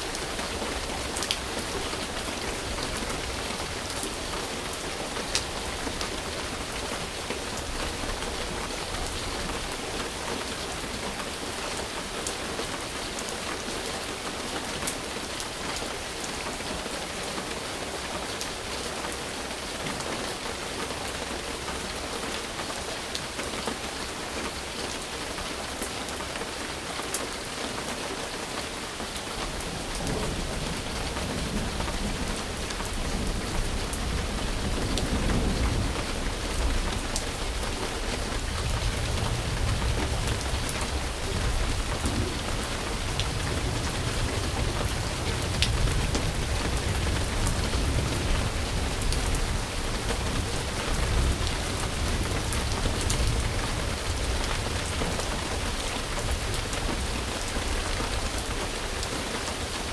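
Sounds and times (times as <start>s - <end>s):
steady rain falling: 0.0s - 59.9s
rolling thunder: 29.8s - 57.9s.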